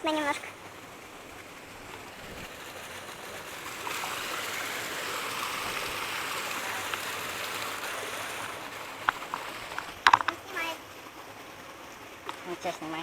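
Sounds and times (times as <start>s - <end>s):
water rushing over rocks: 0.0s - 13.0s.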